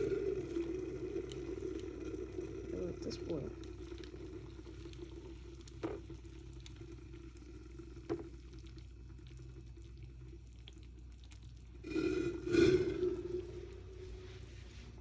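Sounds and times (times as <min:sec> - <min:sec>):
egg frying under a lid: 0:00.0 - 0:14.0
pot of water heating: 0:00.0 - 0:15.0
steady hum: 0:00.0 - 0:15.0
small knocks: 0:05.8 - 0:06.1.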